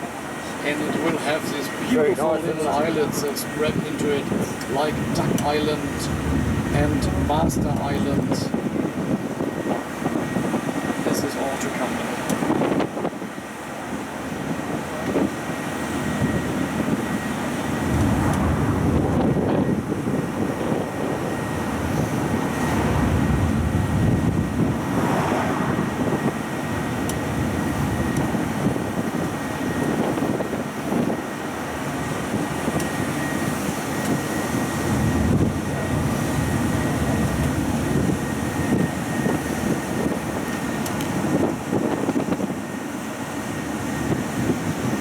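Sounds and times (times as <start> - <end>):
thin steady whine: 0.0 - 45.0
wind buffeting microphone: 0.0 - 45.0
road noise rumbling: 2.4 - 9.1, 16.9 - 28.2
vehicle motor running: 17.7 - 19.7, 21.6 - 24.9.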